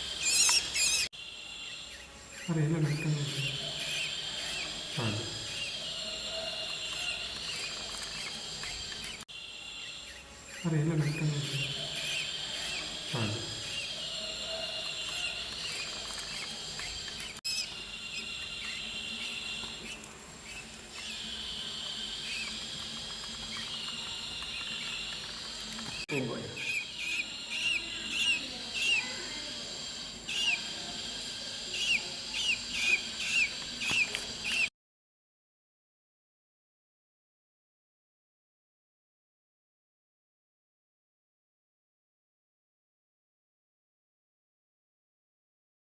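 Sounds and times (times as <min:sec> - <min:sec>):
songbirds twittering and trilling: 0:00.0 - 0:34.7.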